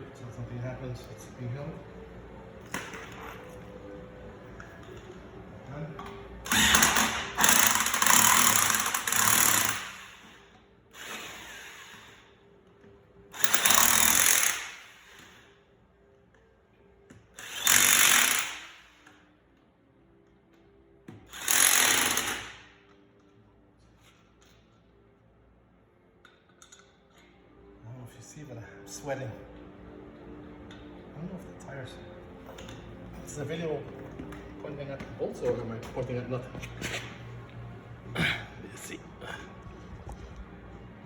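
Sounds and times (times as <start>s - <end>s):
impact wrench bursts: 6.4s - 12.3s, 13.3s - 15.5s, 17.4s - 19.2s, 21.2s - 22.8s.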